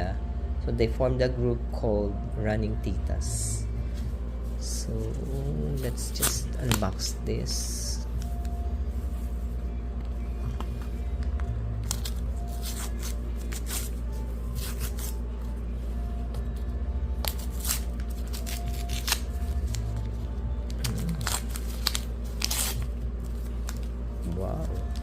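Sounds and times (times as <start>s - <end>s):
packaging tearing and rustling: 17.2s - 19.9s, 20.7s - 23.9s.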